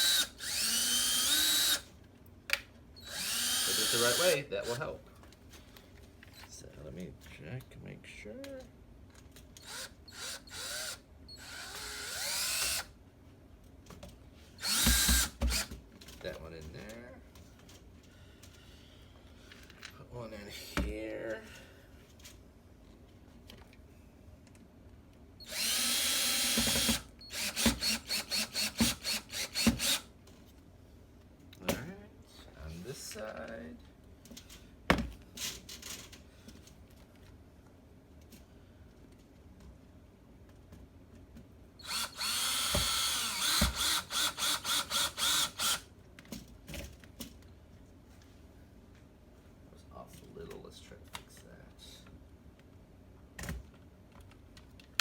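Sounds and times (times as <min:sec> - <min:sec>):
power drill driving a screw: 0:00.0 - 0:01.9, 0:03.0 - 0:04.8, 0:09.6 - 0:12.9, 0:14.6 - 0:15.7, 0:25.4 - 0:30.1, 0:41.8 - 0:45.8.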